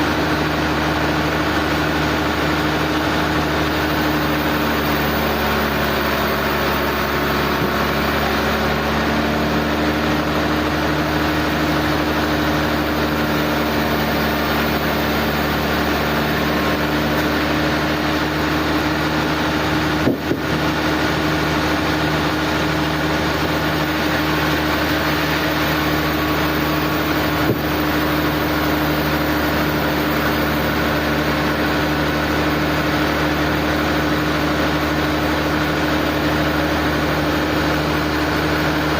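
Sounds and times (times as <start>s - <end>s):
sawmill machinery hum: 0.0s - 38.9s.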